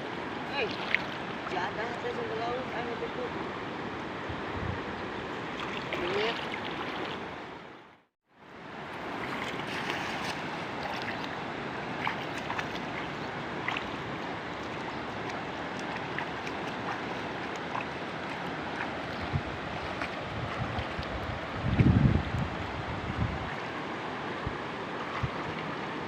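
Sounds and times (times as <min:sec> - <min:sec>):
water rushing: 0:00.0 - 0:26.0
small ticks and splashes: 0:00.5 - 0:01.6, 0:05.6 - 0:07.2, 0:09.2 - 0:22.4.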